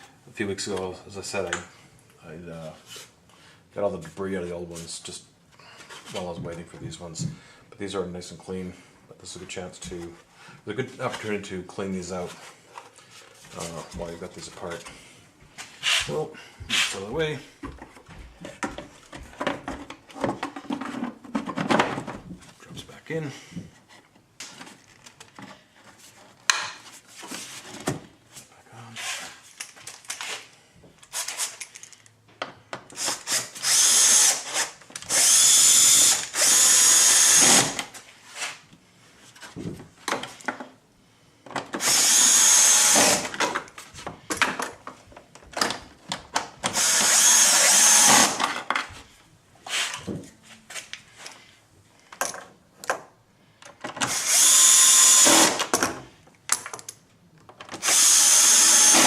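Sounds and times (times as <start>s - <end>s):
clicks and knocks handling screws: 29.5s - 33.0s, 52.0s - 54.2s, 55.7s - 57.8s
cordless screwdriver motor whine: 54.1s - 55.6s.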